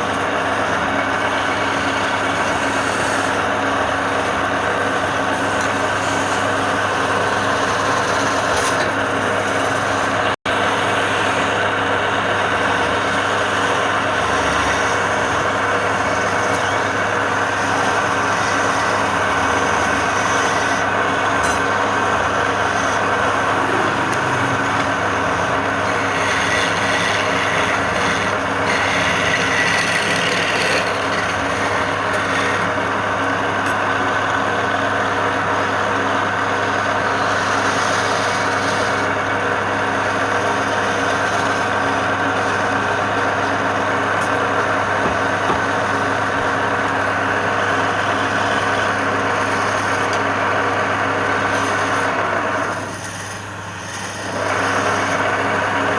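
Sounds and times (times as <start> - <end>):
turning tool scraping wood: 0.0 - 10.4, 12.3 - 33.0, 37.1 - 39.2, 40.0 - 47.1, 47.9 - 50.3, 51.3 - 55.9
wood lathe motor hum: 0.0 - 55.9.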